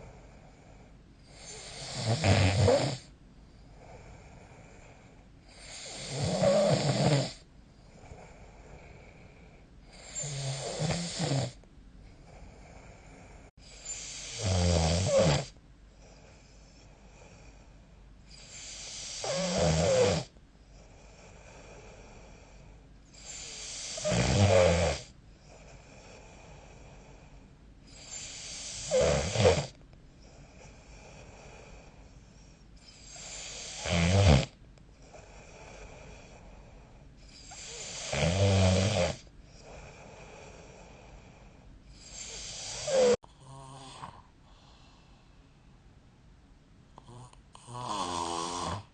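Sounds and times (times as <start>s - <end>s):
quiet breathing: 0.0s - 2.4s, 3.0s - 6.7s, 7.3s - 14.6s, 15.4s - 19.6s, 20.2s - 24.2s, 25.0s - 29.0s, 29.7s - 33.9s, 34.5s - 38.4s, 39.1s - 46.1s
person snoring: 1.3s - 3.1s, 3.8s - 7.4s, 8.0s - 11.6s, 12.3s - 15.6s, 18.4s - 20.3s, 23.2s - 25.1s, 28.0s - 29.7s, 33.1s - 36.8s, 37.4s - 45.2s, 47.0s - 48.9s.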